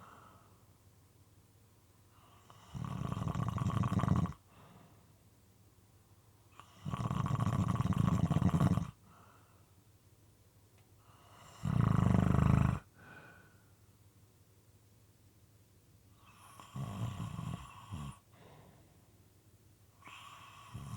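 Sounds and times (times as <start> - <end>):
faint breaths: 0.0 - 0.8, 4.4 - 5.3, 8.9 - 9.9, 12.8 - 14.0, 17.6 - 19.2
rattling snoring: 2.6 - 4.4, 6.7 - 9.0, 11.6 - 12.9, 16.3 - 18.2.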